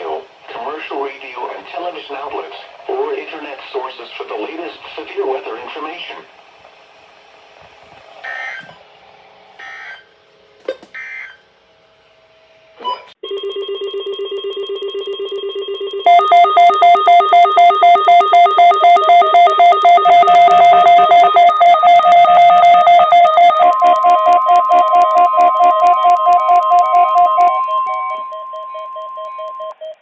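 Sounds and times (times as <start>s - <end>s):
electronic alarm beeping rapidly: 13.4s - 30.0s.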